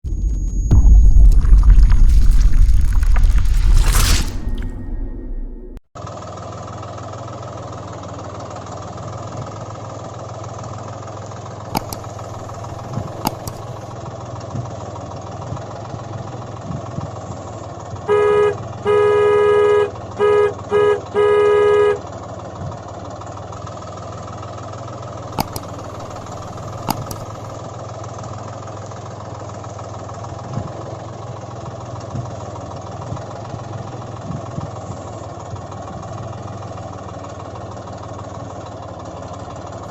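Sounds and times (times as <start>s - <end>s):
horn honks: 18.1s - 22.0s.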